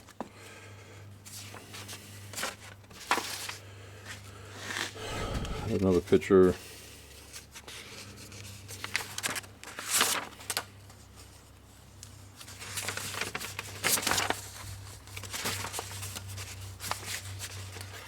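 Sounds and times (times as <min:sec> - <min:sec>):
loud swishes: 0:05.0 - 0:06.0
steady low hum: 0:05.0 - 0:06.1.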